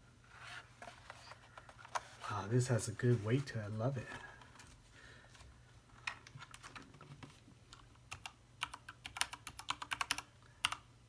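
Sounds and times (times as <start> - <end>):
typing on mechanical keyboard: 7.7 - 10.8.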